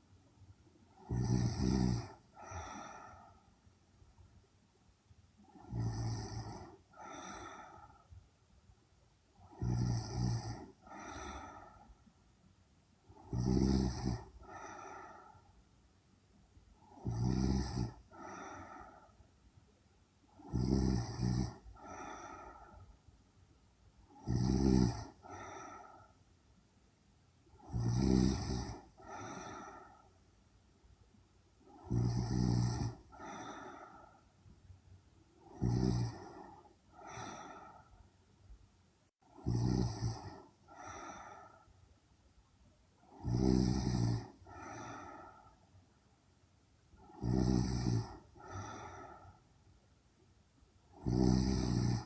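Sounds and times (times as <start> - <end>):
woman snoring: 0.9 - 3.5, 5.4 - 8.1, 9.4 - 12.0, 13.0 - 15.5, 16.8 - 19.2, 20.3 - 22.9, 24.0 - 26.2, 27.5 - 30.1, 31.6 - 34.3, 35.4 - 38.0, 39.3 - 41.7, 43.0 - 45.6, 47.0 - 49.4, 50.9 - 52.0
soft breathing: 2.0 - 4.4, 6.4 - 9.6, 10.5 - 13.3, 14.2 - 17.1, 17.8 - 20.5, 21.5 - 24.2, 25.0 - 26.6, 28.7 - 32.0, 32.9 - 39.4, 40.0 - 42.0, 44.2 - 47.2, 48.0 - 50.2.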